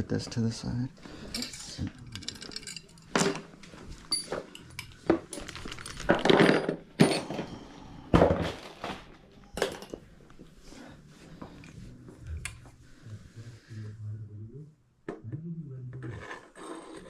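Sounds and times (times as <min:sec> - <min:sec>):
metal bike parts clinking: 0:01.2 - 0:07.6.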